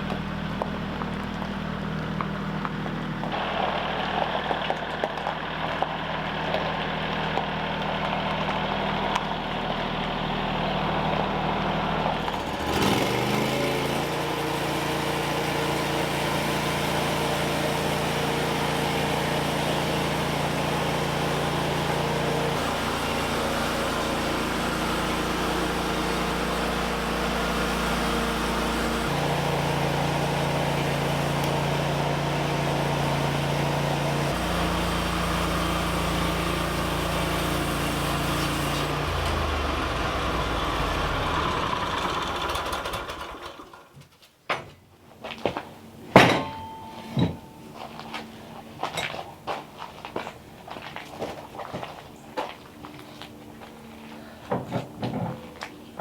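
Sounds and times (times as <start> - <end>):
small engine running: 0.0 - 43.9.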